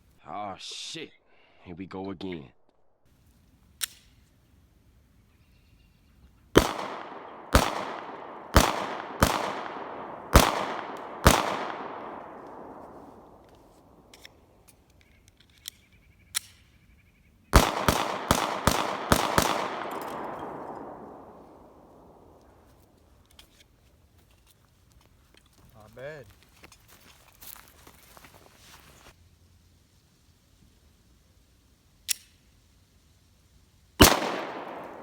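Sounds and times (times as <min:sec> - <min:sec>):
pistol shots with echo: 0:06.6 - 0:14.0, 0:17.6 - 0:22.6, 0:34.0 - 0:35.0.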